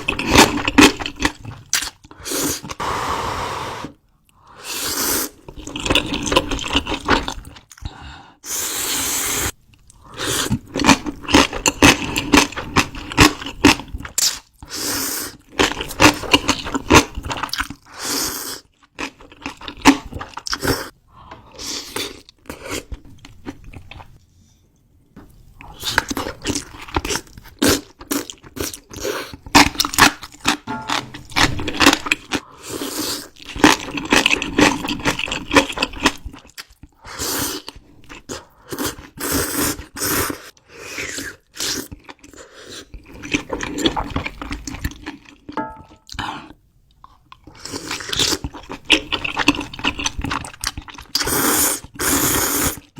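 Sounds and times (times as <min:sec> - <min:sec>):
person chewing and crunching: 0:00.0 - 0:02.8, 0:05.2 - 0:07.9, 0:09.7 - 0:14.7, 0:15.3 - 0:20.9, 0:25.6 - 0:52.9.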